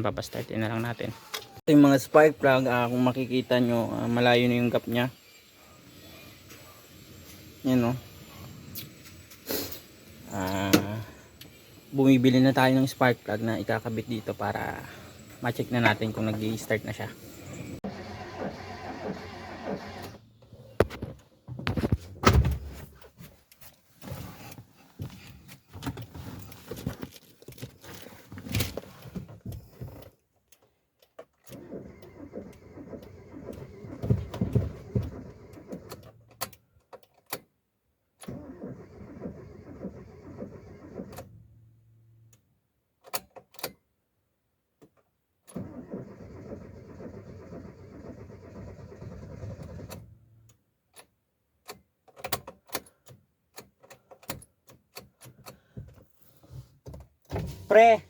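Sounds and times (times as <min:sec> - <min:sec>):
car engine cranking: 0:10.2 - 0:21.1, 0:31.4 - 0:36.4, 0:38.2 - 0:41.4, 0:45.5 - 0:50.2.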